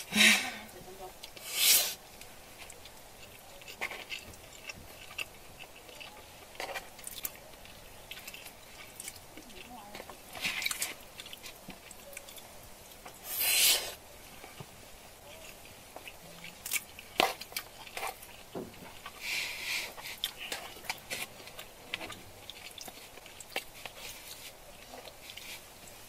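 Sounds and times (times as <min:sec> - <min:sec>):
short hissy bursts: 0:01.4 - 0:02.0, 0:13.2 - 0:14.0
chewing with small clicks: 0:02.2 - 0:13.2, 0:14.4 - 0:26.0.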